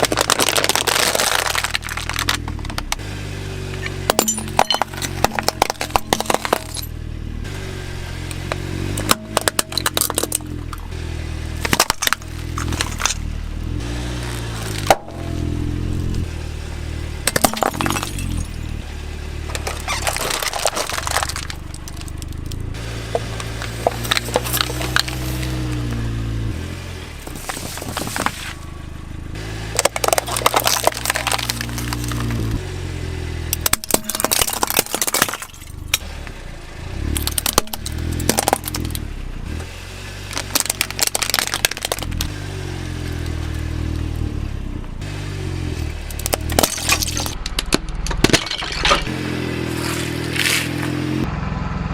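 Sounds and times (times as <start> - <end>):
plastic toys clattering: 0.0 - 3.0, 4.1 - 6.9, 9.0 - 10.8, 11.6 - 13.2, 19.5 - 25.8, 27.3 - 28.5, 29.8 - 32.4, 33.6 - 36.0, 37.2 - 39.0, 40.3 - 42.3, 46.2 - 49.1
low droning hum: 3.6 - 33.1.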